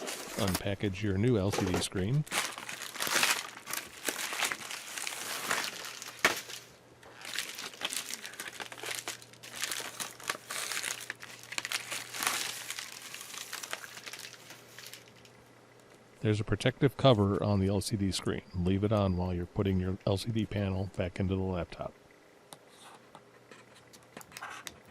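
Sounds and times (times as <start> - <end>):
packaging crinkling and rustling: 0.0 - 15.4.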